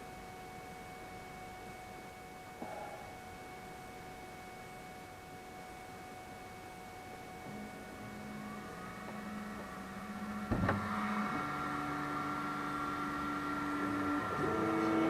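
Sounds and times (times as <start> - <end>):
printer stepper motors whining: 0.0 - 15.0.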